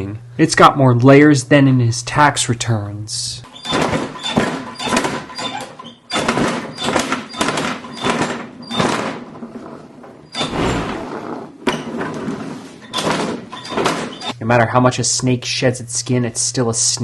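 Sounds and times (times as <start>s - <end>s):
machine shredding a toy: 3.5s - 9.6s.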